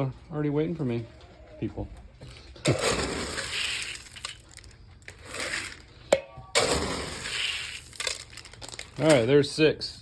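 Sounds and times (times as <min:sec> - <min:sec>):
feed pellets rattling in scoop: 0:02.6 - 0:06.0, 0:06.6 - 0:09.5.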